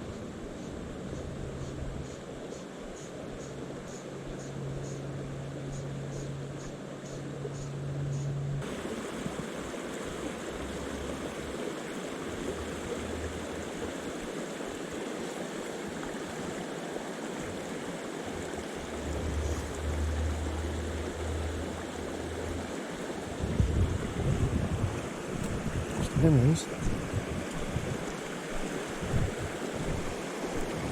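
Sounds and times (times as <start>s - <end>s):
rushing stream water: 8.6s - 30.9s
wind on microphone: 18.4s - 22.7s, 23.3s - 30.9s
steady low hum: 18.4s - 27.9s.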